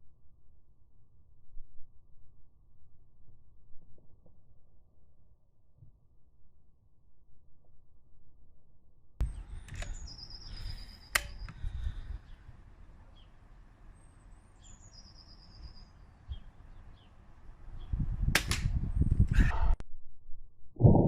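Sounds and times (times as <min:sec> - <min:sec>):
short bird chirps: 0:09.2 - 0:12.5, 0:13.1 - 0:17.2
sharp click: 0:11.0 - 0:11.6, 0:18.3 - 0:18.8.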